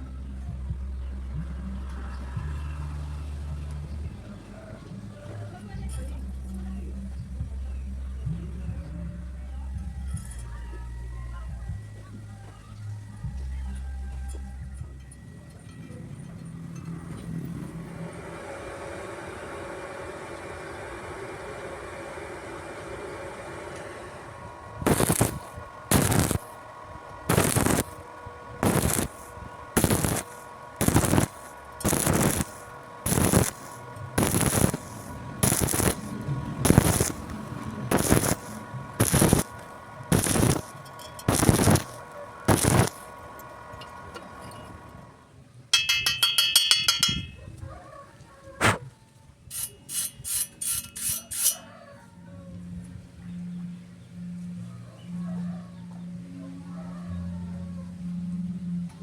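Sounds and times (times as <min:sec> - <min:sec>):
welding arc crackling: 0:22.2 - 0:44.9, 0:49.5 - 0:51.7
scraping on steel: 0:24.8 - 0:44.9, 0:49.5 - 0:52.0
ringing metal taps: 0:45.7 - 0:47.5.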